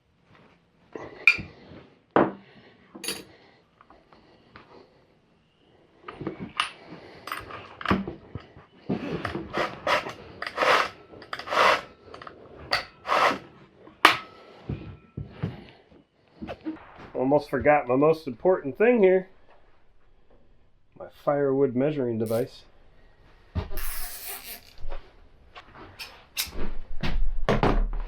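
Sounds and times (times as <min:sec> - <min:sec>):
metal tools clinking and knocking: 0:01.3 - 0:01.5, 0:03.0 - 0:03.3, 0:06.5 - 0:08.5, 0:09.1 - 0:13.3.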